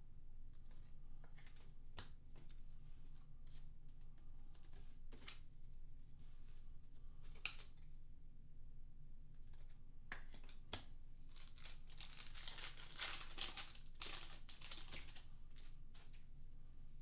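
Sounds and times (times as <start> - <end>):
foil wrapper tearing and crinkling: 11.3 - 15.7.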